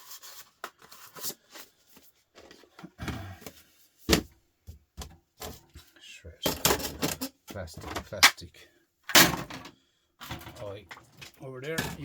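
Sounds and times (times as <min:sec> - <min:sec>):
clicks and scrapes of parts: 0:06.4 - 0:08.4.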